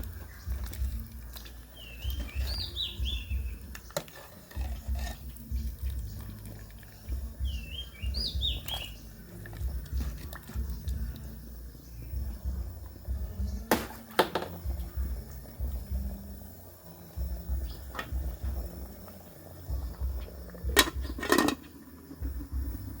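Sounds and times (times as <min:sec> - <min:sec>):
low uneven rumble: 0:00.0 - 0:13.7, 0:14.5 - 0:23.0
pots and utensils clinking: 0:03.3 - 0:06.7, 0:19.8 - 0:22.4.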